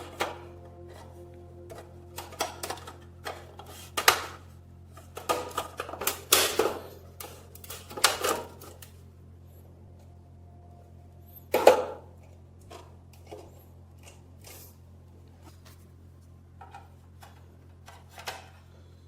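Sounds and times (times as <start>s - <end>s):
steady low hum: 0.0s - 19.0s
metal parts clicking and clanking: 1.7s - 9.0s.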